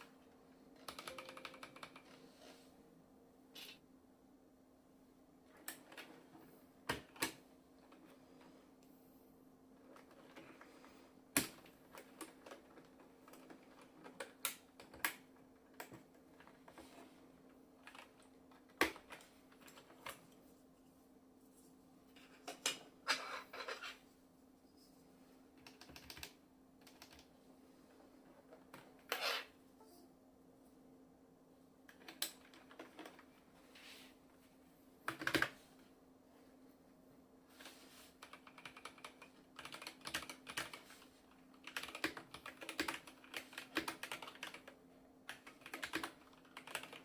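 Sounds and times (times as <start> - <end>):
mechanical keyboard keystrokes: 0.8 - 2.2, 17.8 - 20.2, 25.6 - 27.3, 35.1 - 35.6, 38.2 - 41.0, 41.6 - 47.0.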